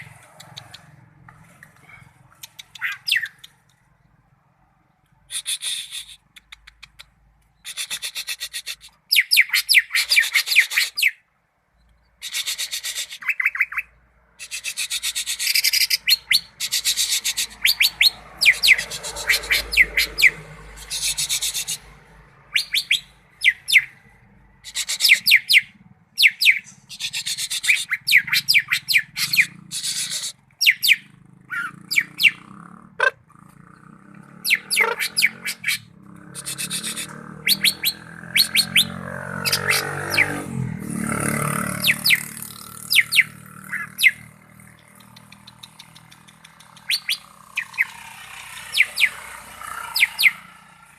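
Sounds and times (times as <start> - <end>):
bird singing trills and whistles: 2.5 - 3.5, 7.6 - 11.2, 12.2 - 21.8, 22.5 - 23.9, 24.6 - 32.5, 33.8 - 40.4, 41.7 - 44.3, 45.0 - 48.0, 48.6 - 49.2, 49.8 - 50.4.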